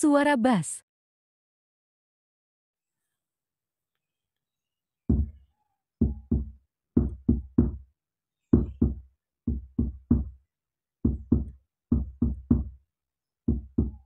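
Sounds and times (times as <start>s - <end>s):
deep bass thumps from speaker: 5.1s - 5.4s, 6.0s - 7.8s, 8.6s - 10.4s, 11.1s - 12.8s.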